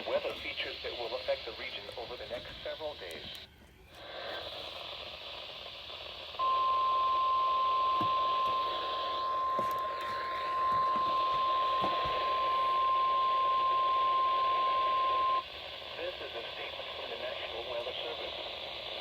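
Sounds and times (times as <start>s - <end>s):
radio static: 0.0s - 19.0s
steady pure alarm tone: 4.1s - 19.0s.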